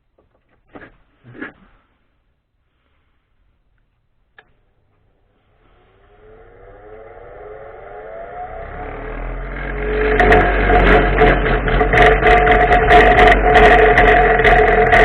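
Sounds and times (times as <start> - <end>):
electric motor humming: 5.5 - 15.0
scratchy grinding: 5.5 - 15.0.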